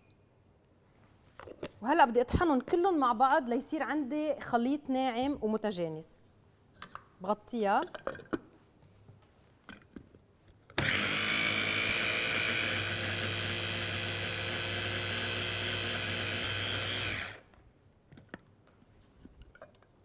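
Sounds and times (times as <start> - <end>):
electric blender running: 10.8 - 17.5.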